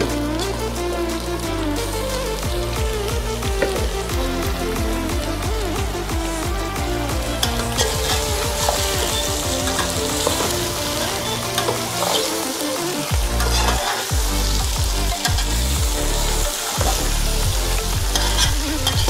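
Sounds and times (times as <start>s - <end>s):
chicken frying in hot oil: 7.2s - 19.0s.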